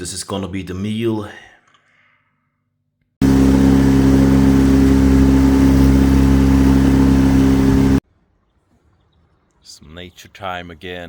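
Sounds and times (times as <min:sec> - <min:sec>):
engine running: 0:03.2 - 0:08.0.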